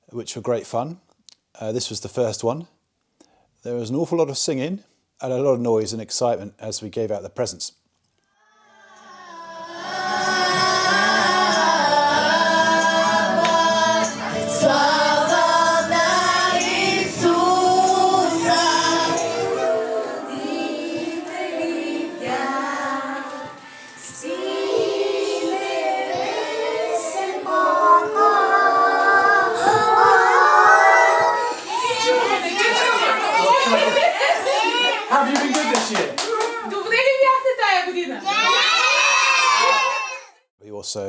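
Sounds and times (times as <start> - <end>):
congregation singing: 9.0 - 35.4.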